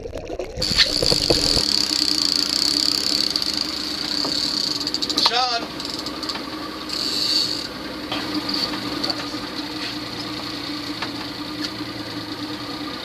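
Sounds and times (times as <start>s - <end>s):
boat engine running: 0.0s - 13.0s.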